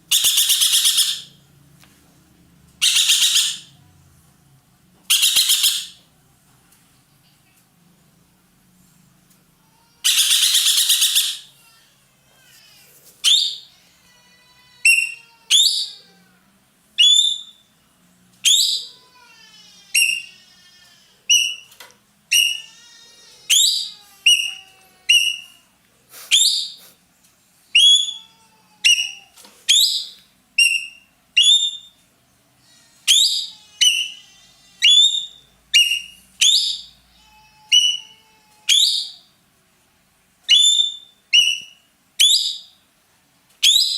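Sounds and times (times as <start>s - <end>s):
bird screeching and whistling: 0.1s - 1.4s, 2.8s - 3.7s, 5.1s - 6.0s, 10.0s - 11.5s, 13.2s - 13.7s, 14.8s - 16.0s, 17.0s - 17.6s, 18.4s - 19.0s, 20.0s - 20.3s, 21.3s - 21.7s, 22.3s - 22.7s, 23.5s - 25.6s, 26.3s - 26.8s, 27.8s - 32.0s, 33.1s - 34.2s, 34.8s - 37.0s, 37.7s - 39.3s, 40.5s - 42.8s, 43.6s - 43.9s.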